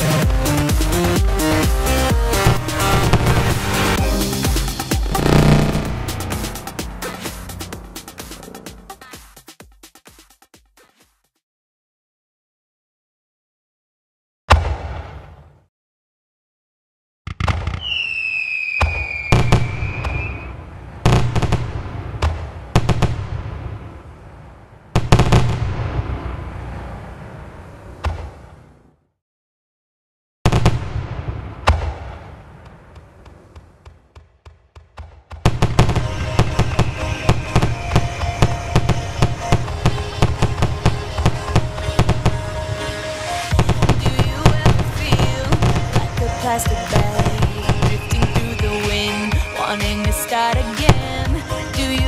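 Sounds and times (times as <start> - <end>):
heavy low rumble: 1.4 - 9.0
fireworks bursting: 1.4 - 9.1, 17.3 - 23.9, 25.0 - 26.4, 30.4 - 50.0
whistling firework shell: 17.4 - 20.6, 35.8 - 39.6, 47.2 - 50.0.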